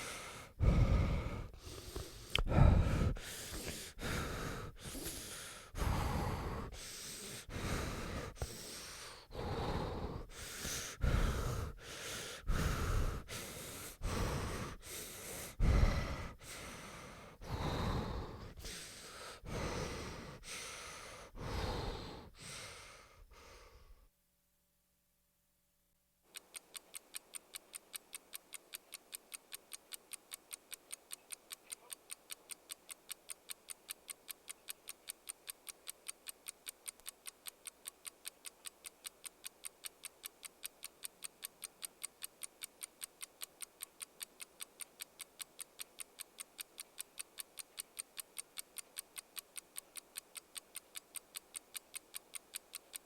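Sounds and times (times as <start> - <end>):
person breathing heavily: 0.0 - 24.1.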